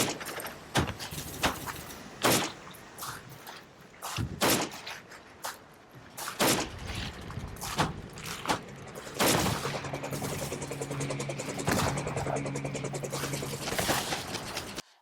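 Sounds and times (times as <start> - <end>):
echoing gunshots: 9.0 - 10.4.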